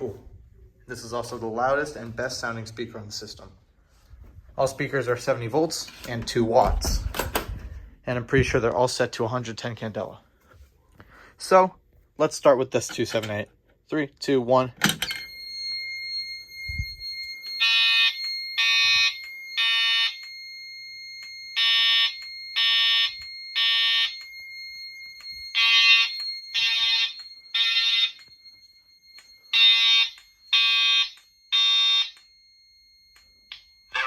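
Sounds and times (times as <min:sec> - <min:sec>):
fire alarm short beeps: 0:15.1 - 0:34.0.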